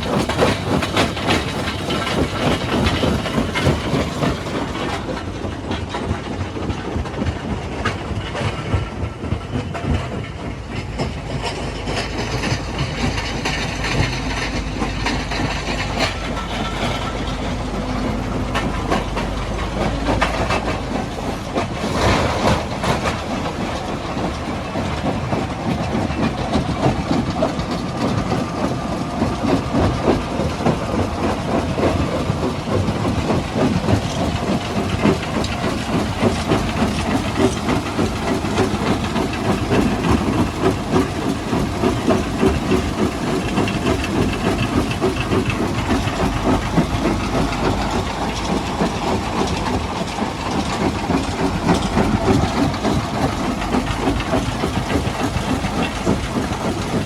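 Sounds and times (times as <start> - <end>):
jaw crusher rumbling: 0.0 - 5.6, 11.2 - 57.0.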